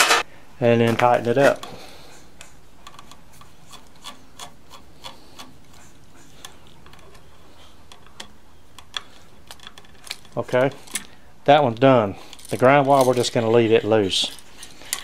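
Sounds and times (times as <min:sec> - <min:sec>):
screwdriver clicking and scraping: 0:02.4 - 0:11.2, 0:12.3 - 0:15.0.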